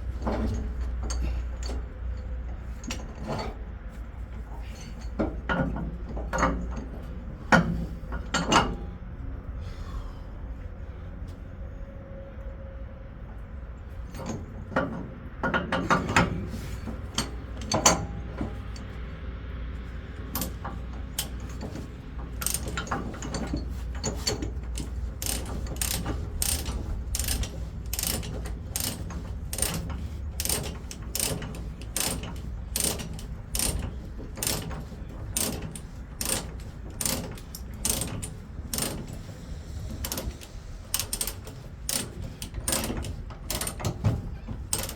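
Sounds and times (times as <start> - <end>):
chain clanking: 20.2 - 44.9
ratchet clicks: 20.3 - 44.9.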